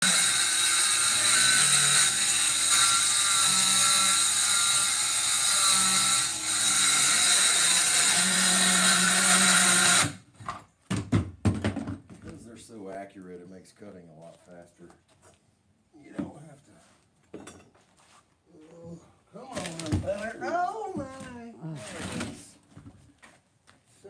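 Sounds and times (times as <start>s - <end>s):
power saw cutting plywood: 0.0s - 10.2s.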